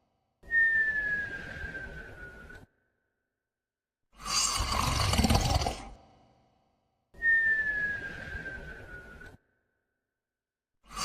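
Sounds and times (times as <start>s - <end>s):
rough snoring breath: 4.2s - 6.3s.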